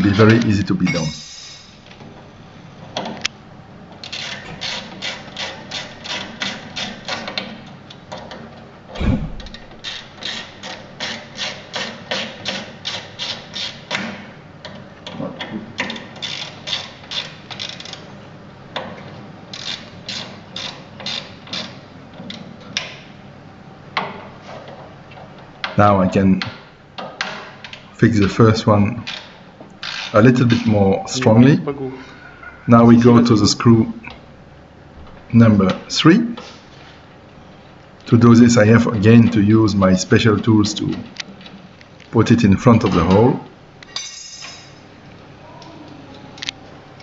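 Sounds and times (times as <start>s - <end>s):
hand ratchet clicking: 4.0s - 7.5s, 9.4s - 14.0s, 16.2s - 18.0s, 19.5s - 21.8s
low thump: 9.0s - 9.8s.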